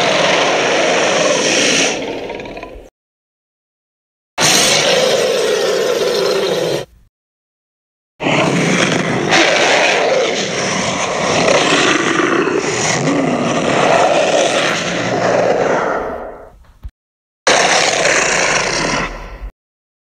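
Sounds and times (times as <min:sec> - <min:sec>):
creature roaring: 0:00.0 - 0:02.9, 0:04.4 - 0:06.9, 0:08.2 - 0:16.5, 0:17.5 - 0:19.5.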